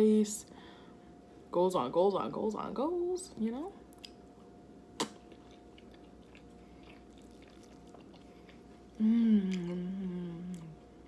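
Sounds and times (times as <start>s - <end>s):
quiet chewing: 5.0s - 10.9s.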